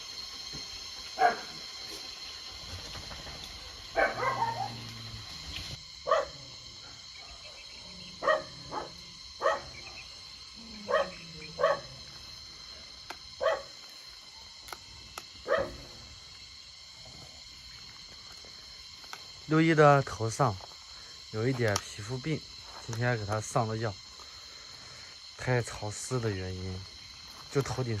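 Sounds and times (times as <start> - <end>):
dog barking: 1.2 - 1.6, 4.0 - 5.0, 6.0 - 6.6, 7.2 - 10.1, 10.8 - 12.0, 13.4 - 13.8, 15.4 - 15.8.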